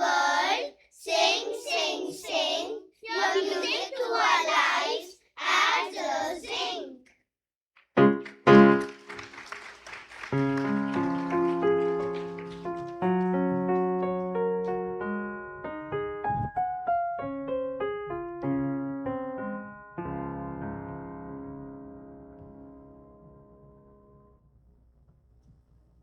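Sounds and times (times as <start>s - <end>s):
piano chords and melody: 8.0s - 9.2s, 10.3s - 24.4s.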